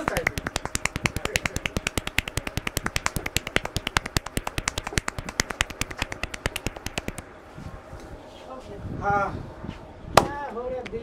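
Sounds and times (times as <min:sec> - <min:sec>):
hands tapping rapidly on head: 0:00.0 - 0:07.2.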